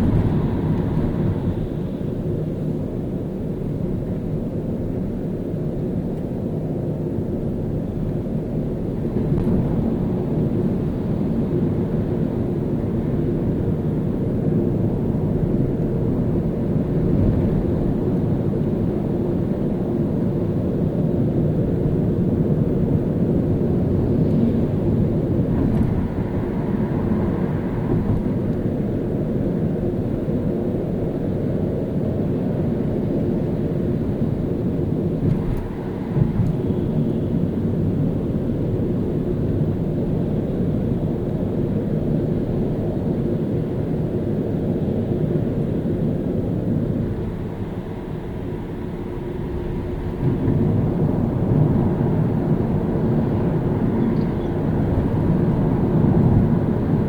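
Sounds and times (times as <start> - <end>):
car engine and tyre road noise: 0.0 - 57.0.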